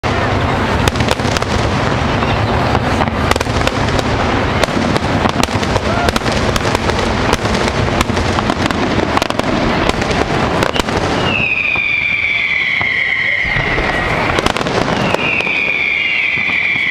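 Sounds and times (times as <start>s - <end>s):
fireworks bursts and crackling: 0.0s - 16.9s
high falling whistle: 10.6s - 16.9s.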